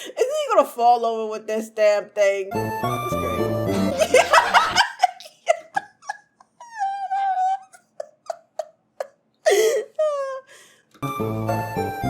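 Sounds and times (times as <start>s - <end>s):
high-pitched whimpers and yelps: 6.6s - 8.0s.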